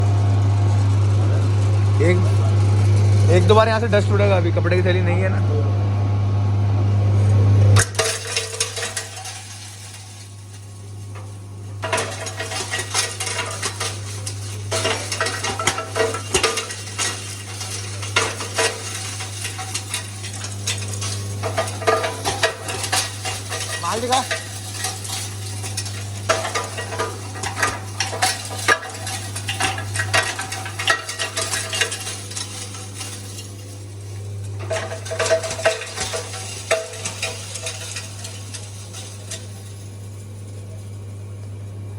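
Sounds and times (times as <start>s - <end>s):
rock salt crackling in mill: 0.0s - 6.5s, 7.1s - 41.9s.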